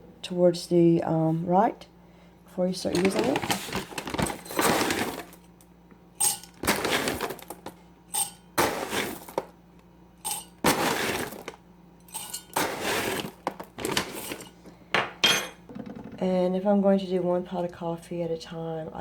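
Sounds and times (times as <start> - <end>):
coffee beans rattling into metal bowl: 2.9 - 5.4, 6.2 - 9.5, 10.2 - 14.5.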